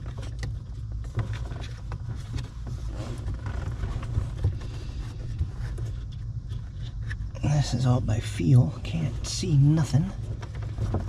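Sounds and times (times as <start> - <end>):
plastic tube rustling: 0.0 - 7.3, 10.2 - 11.0
steady low rumble: 0.0 - 11.0.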